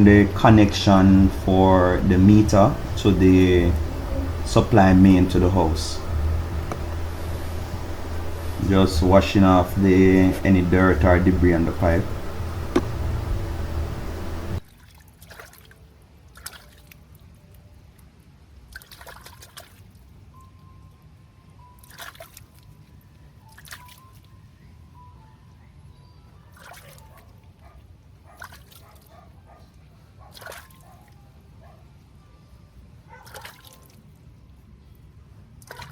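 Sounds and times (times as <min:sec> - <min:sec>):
water splashing and dripping: 0:14.6 - 0:20.2, 0:21.8 - 0:22.8, 0:23.4 - 0:24.3, 0:26.5 - 0:27.2, 0:28.3 - 0:29.1, 0:30.3 - 0:31.1, 0:33.2 - 0:34.2, 0:35.6 - 0:35.9.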